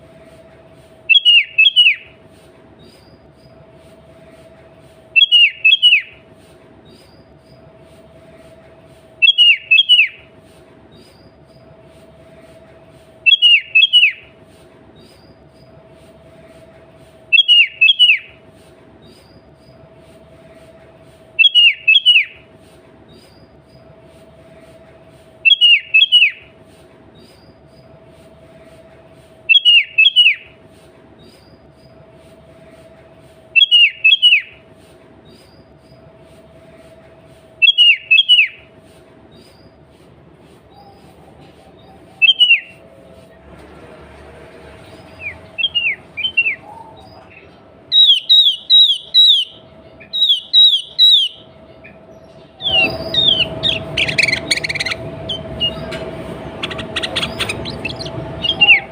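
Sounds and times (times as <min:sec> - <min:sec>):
bird calling: 0:01.1 - 0:02.2, 0:05.2 - 0:06.3, 0:09.2 - 0:10.3, 0:13.2 - 0:14.3, 0:17.3 - 0:18.4, 0:21.4 - 0:22.5, 0:25.4 - 0:26.5, 0:29.5 - 0:30.6, 0:33.6 - 0:34.6, 0:37.6 - 0:38.7, 0:40.7 - 0:42.9, 0:45.0 - 0:58.9
steady low hum: 0:48.6 - 0:58.9.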